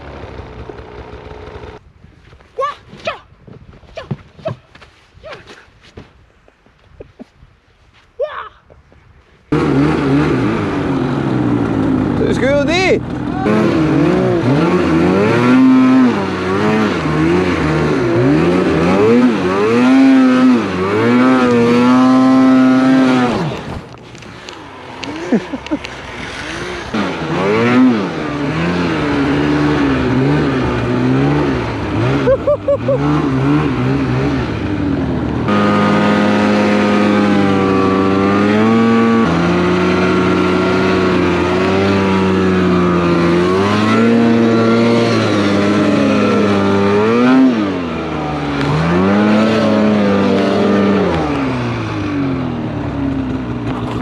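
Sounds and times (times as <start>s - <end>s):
snowmobile engine revving: 0.0s - 1.8s, 9.5s - 54.0s.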